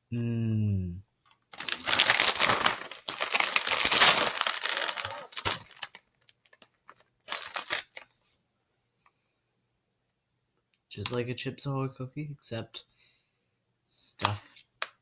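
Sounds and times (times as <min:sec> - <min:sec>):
plastic packaging crinkling: 0:01.5 - 0:08.1.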